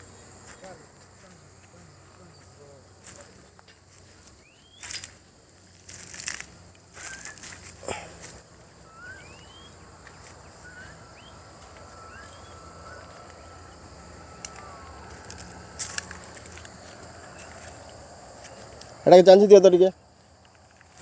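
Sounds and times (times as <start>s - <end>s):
rustling crunches: 2.8s - 19.0s
faint steady high tone: 6.0s - 19.6s
short rising chirps: 6.9s - 7.7s, 8.6s - 17.8s.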